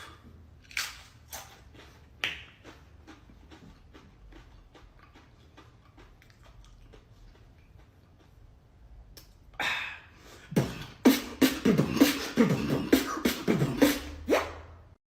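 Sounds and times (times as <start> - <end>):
person beatboxing: 10.5 - 14.7.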